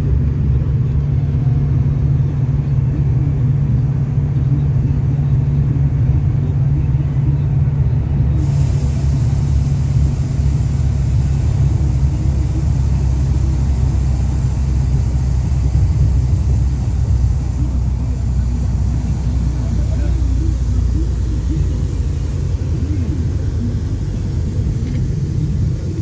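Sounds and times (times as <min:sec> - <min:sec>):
diesel engine drone from inside cabin: 0:00.0 - 0:26.0
steady high hiss: 0:08.4 - 0:26.0.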